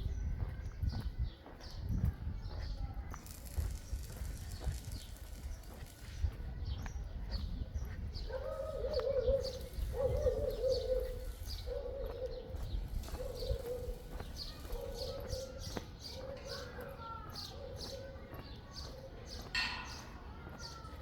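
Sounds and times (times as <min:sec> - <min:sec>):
small birds chirping: 0:00.0 - 0:21.0
dove cooing: 0:08.6 - 0:12.6.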